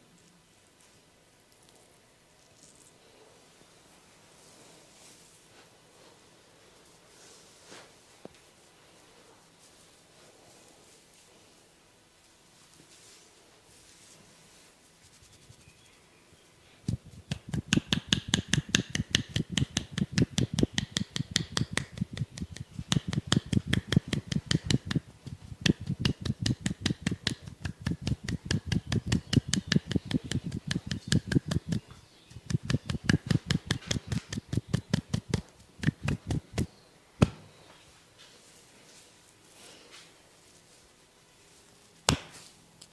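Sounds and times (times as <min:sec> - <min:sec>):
hands striking body in massage: 0:16.9 - 0:37.5, 0:42.1 - 0:42.5.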